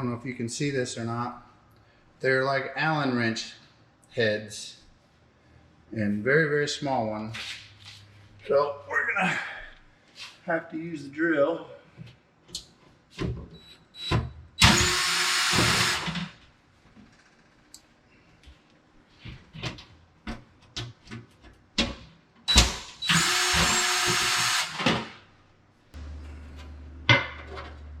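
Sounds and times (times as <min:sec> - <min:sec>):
cordless drill running: 0:14.6 - 0:16.2, 0:23.0 - 0:24.9.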